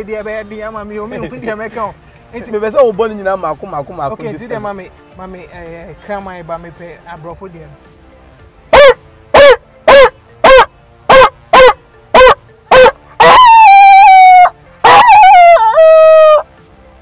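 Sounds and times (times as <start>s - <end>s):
man imitating dog barks: 8.7s - 15.9s
man howling like a dog: 9.9s - 16.4s.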